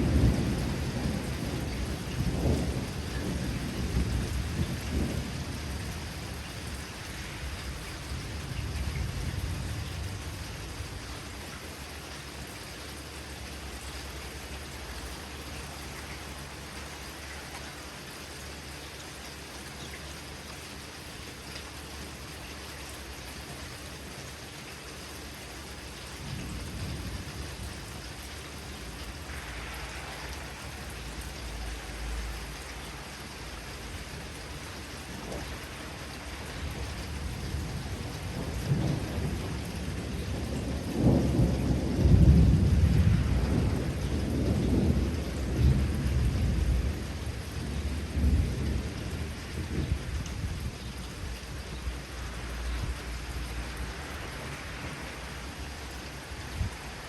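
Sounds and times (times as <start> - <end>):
rolling thunder rumbles: 0.0 - 11.5, 26.2 - 57.0
steady rain falling: 0.0 - 57.0.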